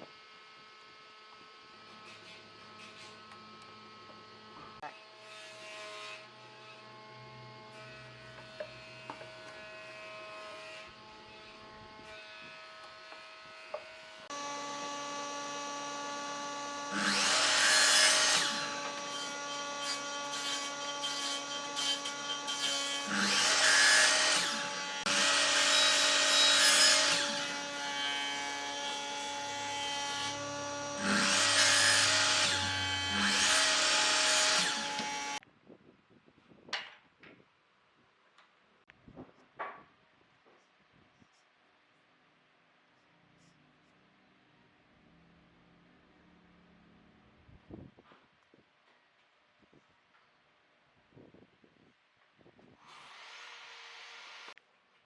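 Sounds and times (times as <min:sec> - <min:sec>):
power tool cutting wood: 0:01.0 - 0:35.4, 0:52.8 - 0:54.6.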